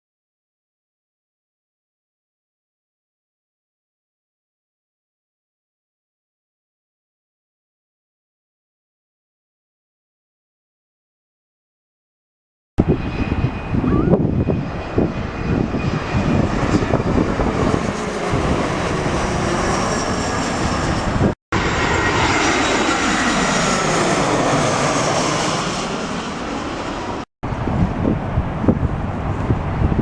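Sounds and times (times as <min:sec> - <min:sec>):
jet engines passing overhead: 0:12.8 - 0:30.0.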